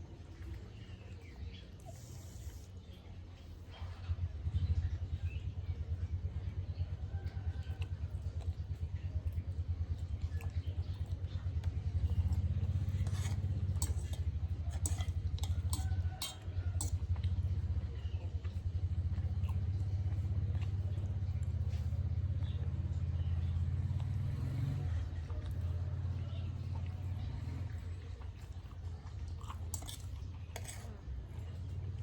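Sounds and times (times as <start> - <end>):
motorcycle engine chugging: 3.8 - 28.2.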